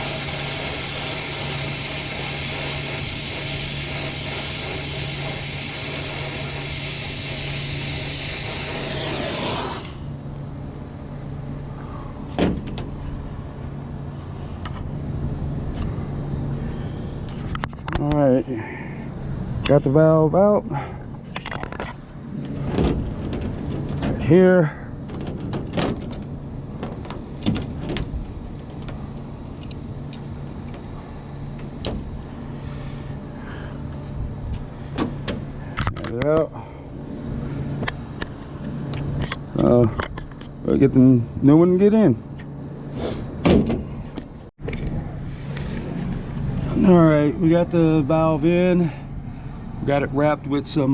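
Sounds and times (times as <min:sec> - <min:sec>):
pressurised gas hissing: 0:00.0 - 0:10.1, 0:42.9 - 0:43.3
low steady hum: 0:09.4 - 0:50.9
tools and metal parts clicking: 0:25.2 - 0:30.8.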